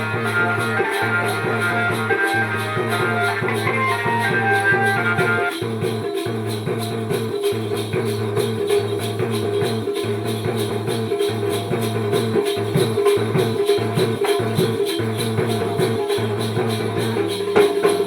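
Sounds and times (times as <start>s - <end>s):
folk dance music: 0.0s - 5.9s
jingling percussion beat: 0.0s - 18.0s.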